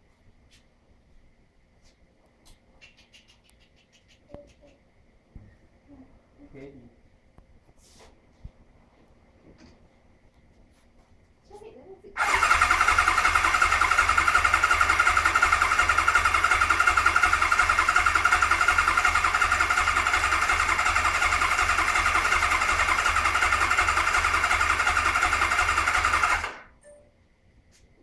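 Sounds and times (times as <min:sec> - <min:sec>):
engine cranking with starter whine: 0:12.2 - 0:26.8.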